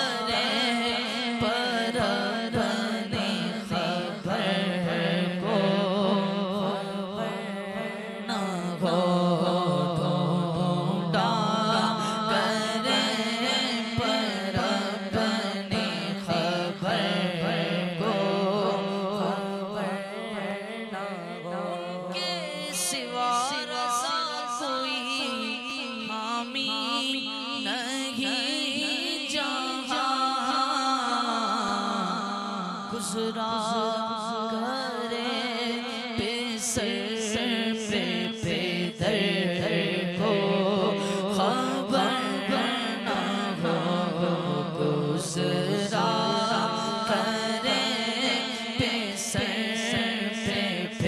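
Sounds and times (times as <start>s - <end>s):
man singing: 0.0s - 51.0s.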